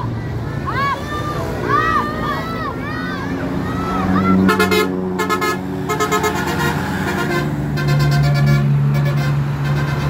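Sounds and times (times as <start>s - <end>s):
bus engine running: 0.0s - 10.0s
bus multi-tone air horn: 4.4s - 10.0s.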